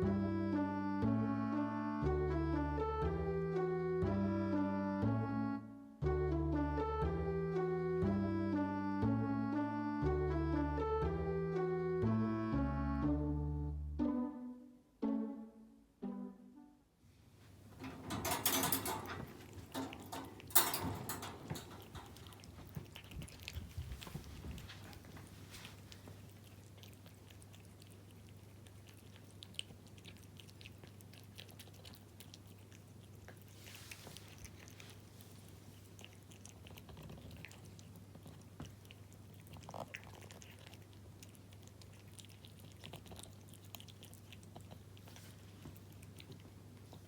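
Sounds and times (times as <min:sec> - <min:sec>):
cat chewing and licking food: 0:17.3 - 0:47.0.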